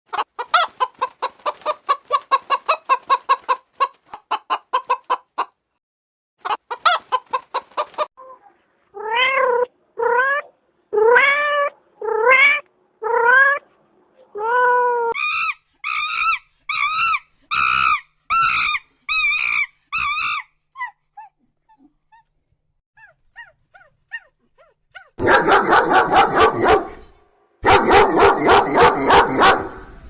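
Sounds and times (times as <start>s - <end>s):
cat meowing: 9.0s - 13.6s.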